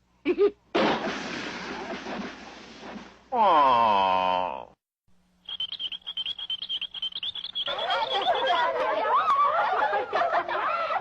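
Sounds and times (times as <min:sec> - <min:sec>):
squeaky chattering cartoon voices: 0:05.5 - 0:09.0.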